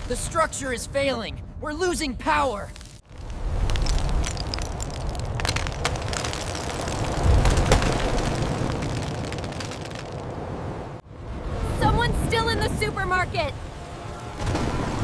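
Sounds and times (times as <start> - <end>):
debris cracking and snapping: 2.7 - 10.3.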